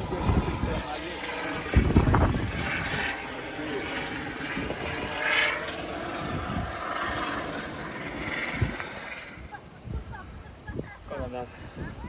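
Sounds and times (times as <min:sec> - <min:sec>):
steady rushing noise: 0:00.0 - 0:12.0.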